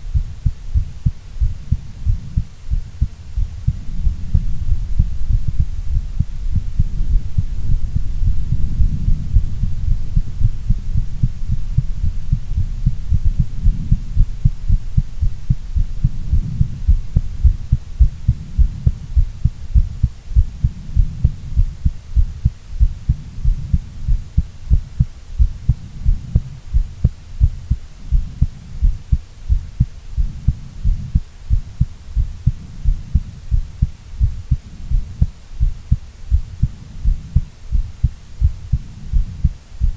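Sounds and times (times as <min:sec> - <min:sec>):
low rumble: 0:00.0 - 0:29.6
heartbeat thumps: 0:00.0 - 0:39.9.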